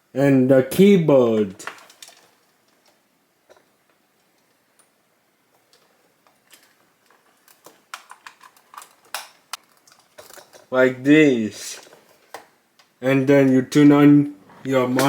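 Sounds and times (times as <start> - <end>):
keyboard and cable clicks: 7.4 - 10.2.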